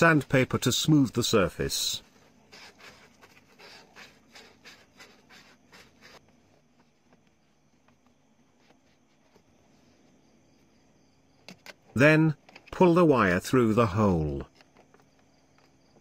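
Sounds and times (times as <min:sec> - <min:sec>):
sandpaper rubbing on plastic: 0:02.1 - 0:07.0.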